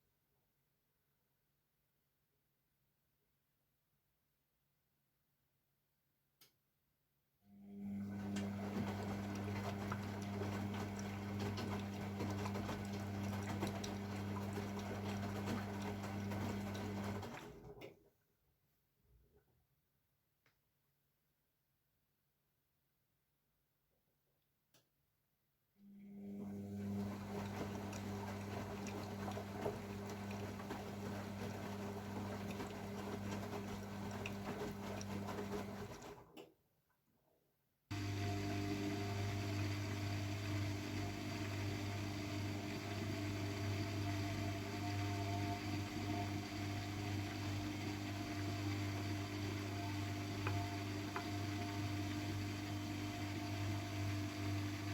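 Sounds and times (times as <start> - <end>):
washing machine hum: 7.7 - 18.0, 26.2 - 36.4, 37.9 - 54.9
laundry sloshing in drum: 8.1 - 17.8, 26.9 - 36.2, 38.0 - 54.9.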